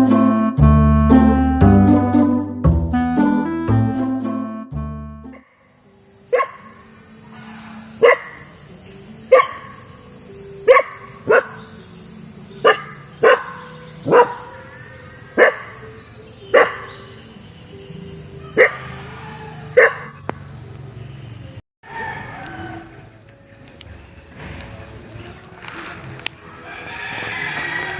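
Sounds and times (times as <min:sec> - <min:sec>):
dog barking: 0:06.3 - 0:10.0, 0:10.6 - 0:12.0, 0:12.6 - 0:17.3, 0:18.5 - 0:20.2.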